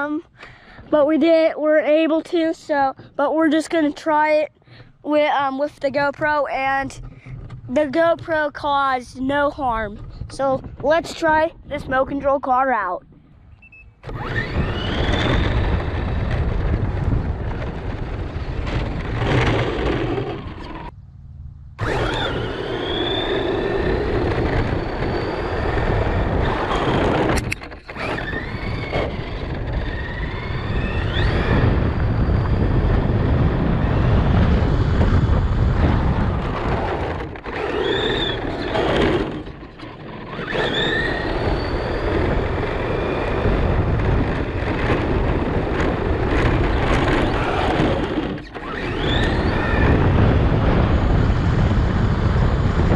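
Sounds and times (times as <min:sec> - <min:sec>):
wind noise: 0:00.0 - 0:52.9
electric motor whining: 0:13.6 - 0:20.9, 0:21.7 - 0:52.9
tyres rumbling on road: 0:14.0 - 0:21.0, 0:21.7 - 0:52.9.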